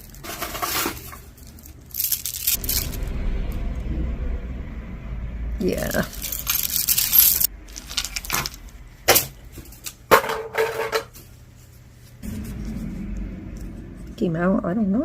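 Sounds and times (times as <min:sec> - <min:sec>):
jewelry clinking and rattling: 0:00.0 - 0:03.0, 0:06.0 - 0:08.6.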